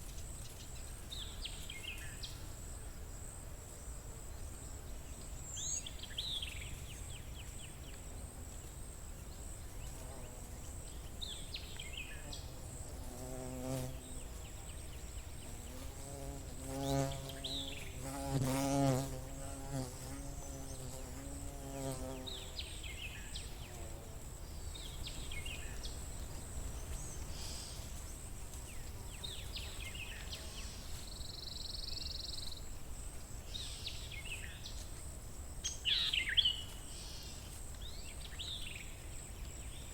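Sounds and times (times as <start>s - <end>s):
flying insect buzzing: 12.0s - 24.5s.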